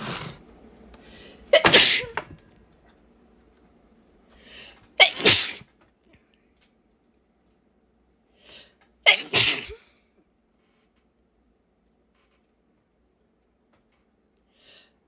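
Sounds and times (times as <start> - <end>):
woman sneezing: 1.5 - 2.2, 5.0 - 5.6, 9.1 - 9.8.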